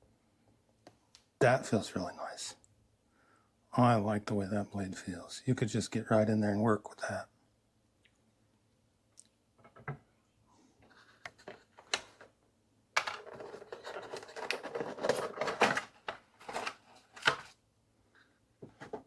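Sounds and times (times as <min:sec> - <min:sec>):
packaging clicks and scrapes: 0:13.0 - 0:17.6
packaging rustling and scraping: 0:13.0 - 0:17.6.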